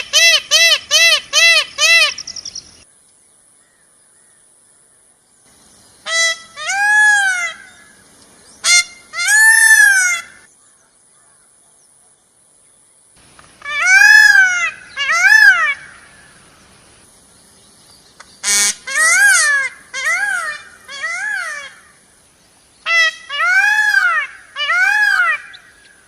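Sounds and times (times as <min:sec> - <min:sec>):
peacock calling: 0:00.0 - 0:02.9, 0:06.0 - 0:11.4, 0:13.2 - 0:16.6, 0:18.2 - 0:22.2, 0:22.8 - 0:26.0.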